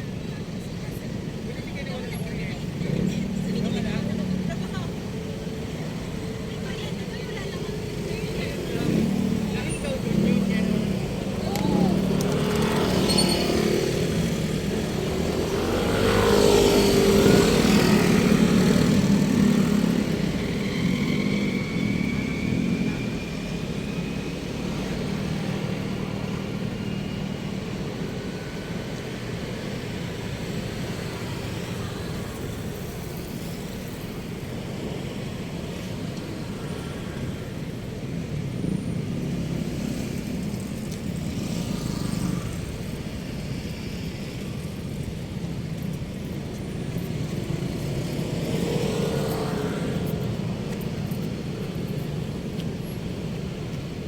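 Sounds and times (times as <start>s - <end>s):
steady traffic: 0.0s - 54.0s
vehicle engine passing close: 8.3s - 27.4s.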